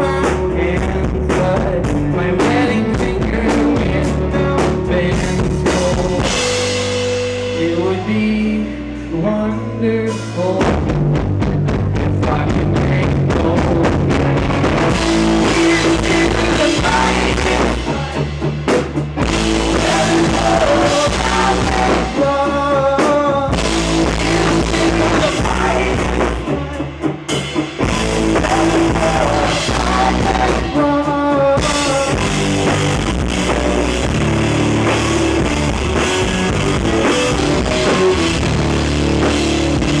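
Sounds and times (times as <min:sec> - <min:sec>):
rock band playing: 0:00.0 - 0:40.0.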